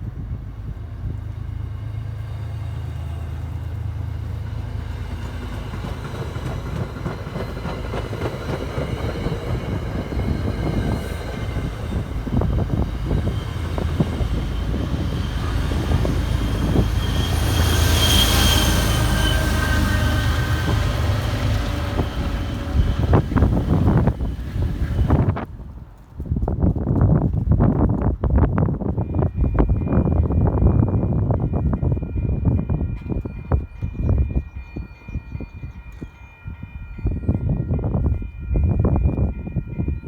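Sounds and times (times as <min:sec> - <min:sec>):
diesel locomotive engine hum: 0:00.0 - 0:40.0
high-pitched wheel squeal: 0:11.8 - 0:20.9.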